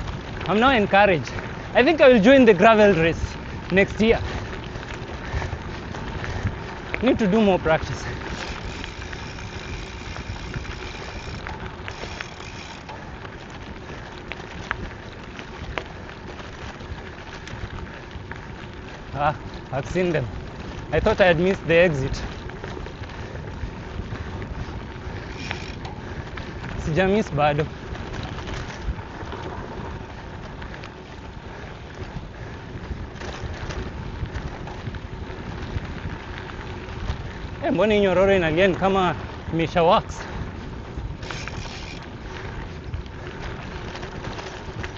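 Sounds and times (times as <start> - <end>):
sharp clicks and rattles: 0.0 - 29.8, 41.0 - 44.9
tyres rolling on gravel: 0.0 - 44.9
wind on microphone: 3.0 - 13.0, 13.6 - 44.9.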